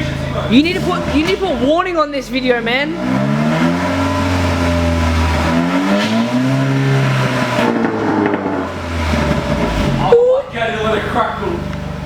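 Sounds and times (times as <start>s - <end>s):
car engine revving: 0.0s - 12.0s
turbo whistle: 3.6s - 8.0s.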